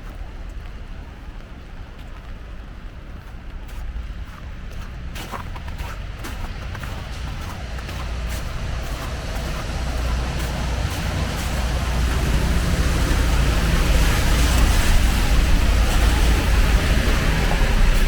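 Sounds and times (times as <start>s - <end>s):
vehicle passing on wet road: 4.1s - 18.0s.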